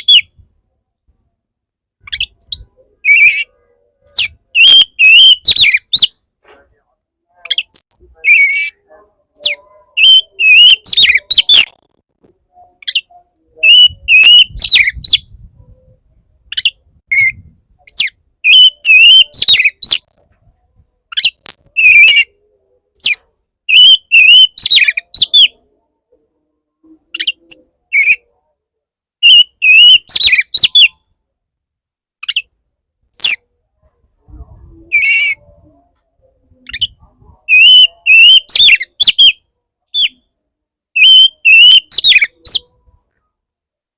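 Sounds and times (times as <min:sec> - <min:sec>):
bird singing whistled phrases: 0:04.1 - 0:06.2, 0:07.4 - 0:08.8, 0:09.4 - 0:11.8, 0:12.7 - 0:15.4, 0:16.5 - 0:20.1, 0:21.1 - 0:22.3, 0:23.0 - 0:25.6, 0:29.2 - 0:31.0, 0:34.9 - 0:35.4, 0:36.6 - 0:39.4, 0:41.0 - 0:42.7.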